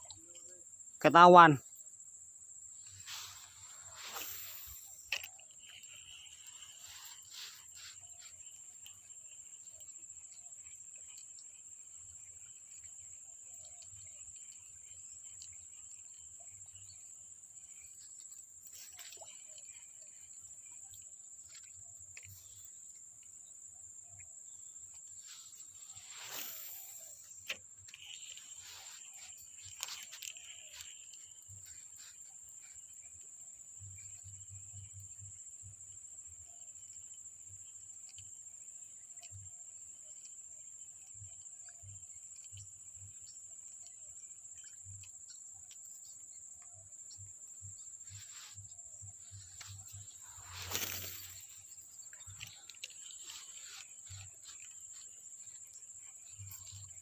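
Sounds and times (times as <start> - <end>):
insects chirring: 0.0 - 57.0.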